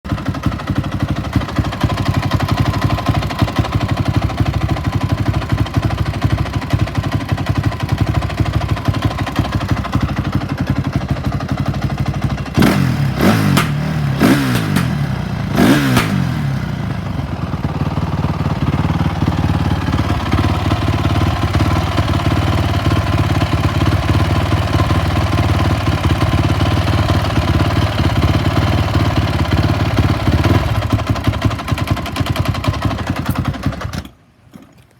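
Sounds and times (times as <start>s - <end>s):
motorcycle engine idling roughly: 0.1s - 34.3s
engine revs blipped: 12.6s - 16.6s.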